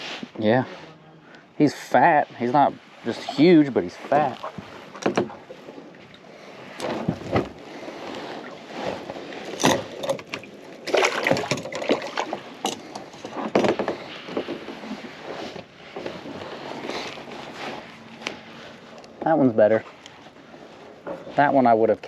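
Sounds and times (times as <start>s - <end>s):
knocks and clicks of handling: 12.7s - 14.8s.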